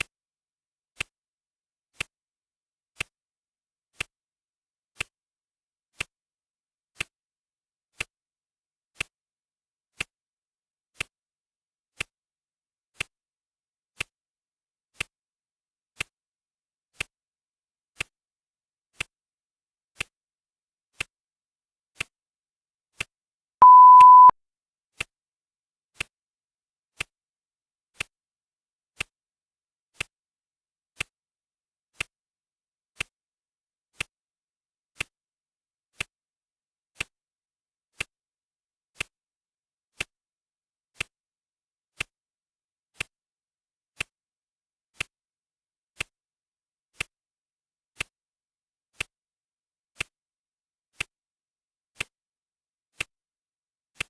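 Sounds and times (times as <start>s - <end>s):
loud electronic beep: 23.6s - 24.3s.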